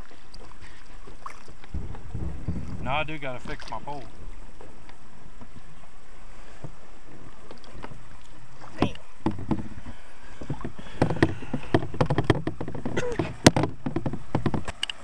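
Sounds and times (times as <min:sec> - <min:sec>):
steady low rush: 0:01.7 - 0:04.4
gear clicks and knocks: 0:09.2 - 0:15.0.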